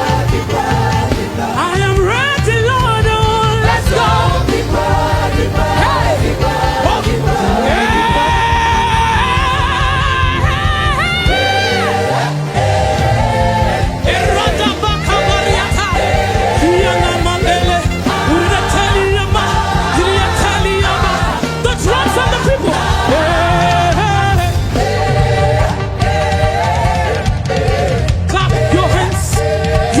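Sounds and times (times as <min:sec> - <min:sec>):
band accompaniment with steady beat: 0:00.0 - 0:30.0.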